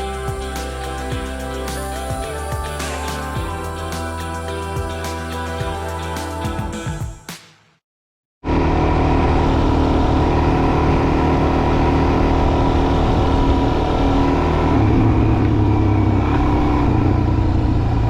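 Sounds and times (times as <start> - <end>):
motorcycle engine running: 8.4 - 18.0
wind and road noise: 8.4 - 18.0.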